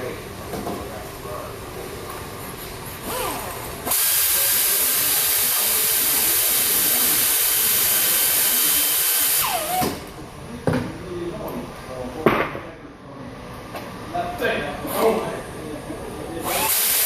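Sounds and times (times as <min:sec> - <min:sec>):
air blow gun hissing: 0:03.9 - 0:09.8.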